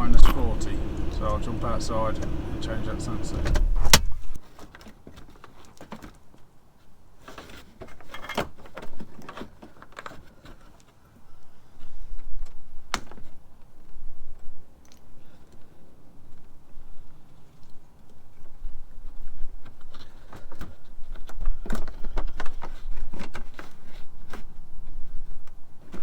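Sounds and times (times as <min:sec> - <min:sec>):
light handling clicks and taps: 0:00.0 - 0:04.4
low rumble: 0:00.0 - 0:04.4
sharp click: 0:00.1 - 0:04.4.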